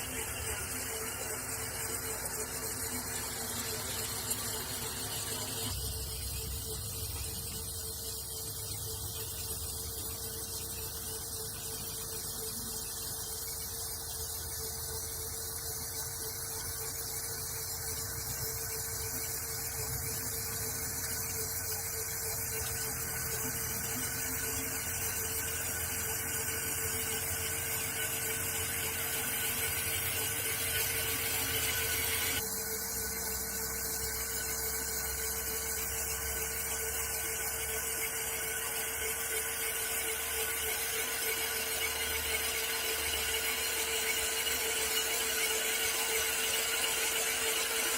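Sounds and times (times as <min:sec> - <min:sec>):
electric motor whining: 0:17.9 - 0:47.9.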